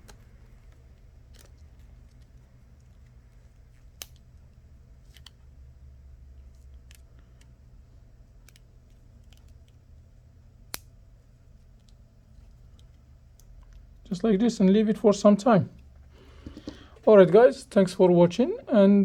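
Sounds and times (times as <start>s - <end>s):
low steady hum: 0.0s - 19.0s
faint handling clicks and taps: 15.7s - 17.2s.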